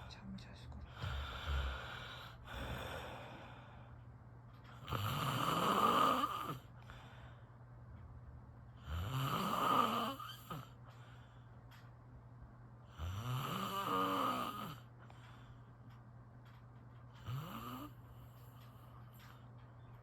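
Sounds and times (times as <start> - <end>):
soft breathing: 0.0 - 5.1, 6.2 - 7.9, 10.1 - 12.0, 14.4 - 19.7
person snoring: 0.9 - 3.6, 4.8 - 6.7, 8.8 - 10.8, 12.9 - 14.9, 17.2 - 18.0.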